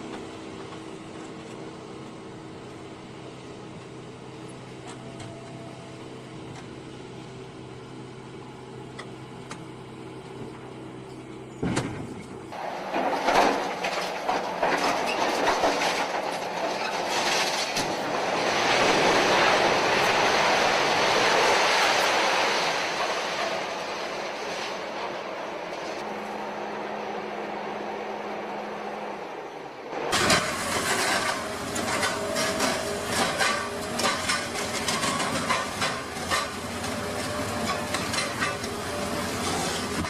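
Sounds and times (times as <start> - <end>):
heavy metal grinding and clattering: 30.1 - 40.0.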